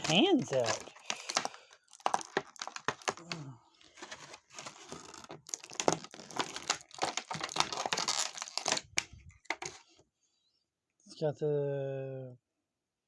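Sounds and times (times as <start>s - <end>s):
plastic crinkling and clicking: 0.0s - 10.0s.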